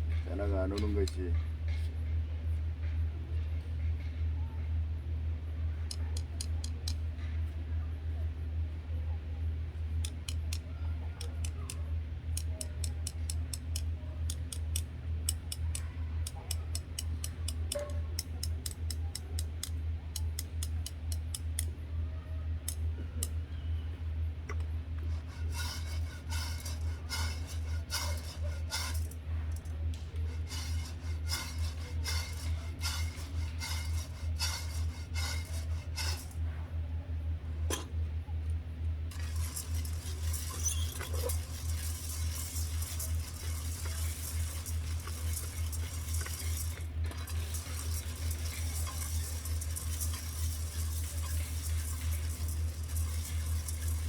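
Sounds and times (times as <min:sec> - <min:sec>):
steady low hum: 0:00.0 - 0:54.0
coffee beans crackling: 0:25.0 - 0:29.2, 0:30.0 - 0:36.4, 0:39.1 - 0:54.0.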